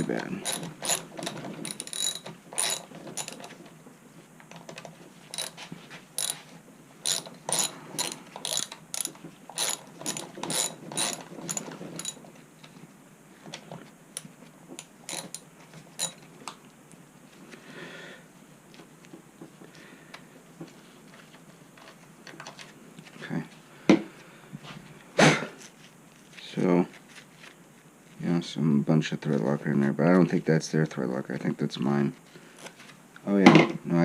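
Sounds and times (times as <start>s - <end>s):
ratcheting driver clicking: 0.0s - 3.5s, 4.5s - 5.6s, 7.0s - 12.2s.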